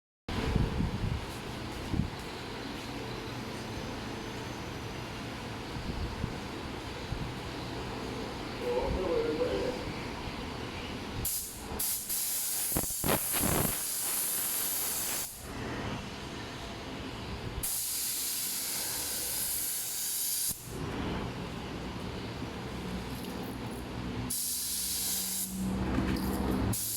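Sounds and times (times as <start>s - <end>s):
spray hissing: 11.2s - 15.4s, 17.6s - 20.7s, 24.3s - 25.6s.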